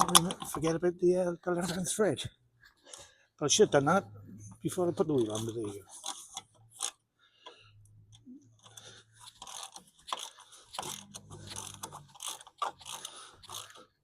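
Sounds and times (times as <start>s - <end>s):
ratchet wrench clicking: 8.6s - 14.0s.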